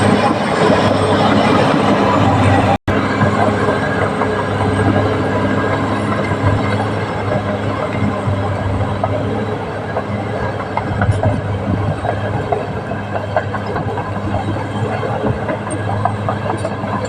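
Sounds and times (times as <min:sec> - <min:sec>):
diesel engine drone: 0:00.0 - 0:17.0
steel tracks clanking: 0:00.0 - 0:17.0.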